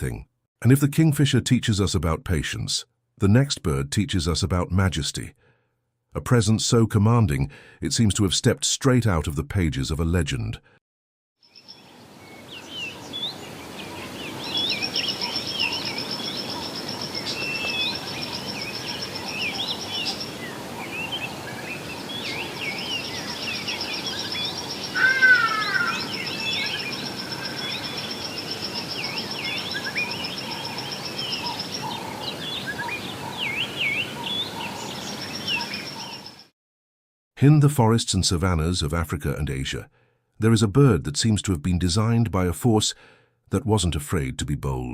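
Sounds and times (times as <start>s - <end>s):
lower bird call: 11.4s - 36.5s
small birds chirping: 11.4s - 36.5s.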